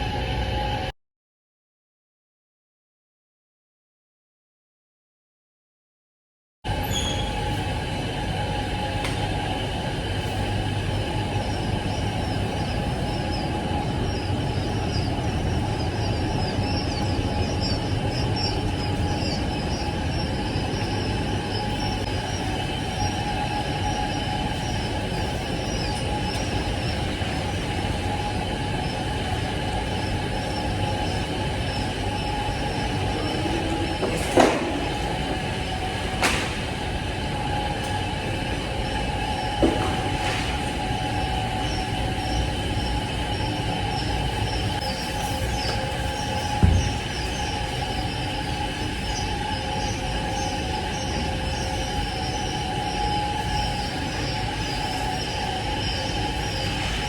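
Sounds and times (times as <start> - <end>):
steady machine hum: 0.0 - 0.9, 6.7 - 57.0
quail chicks peeping: 11.2 - 29.2, 29.8 - 33.8, 41.0 - 57.0.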